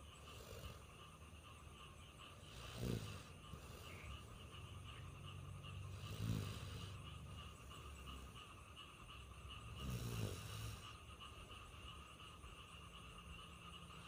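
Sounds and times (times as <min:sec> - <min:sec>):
pet snoring: 0:00.0 - 0:01.3, 0:02.2 - 0:08.4, 0:09.5 - 0:11.5.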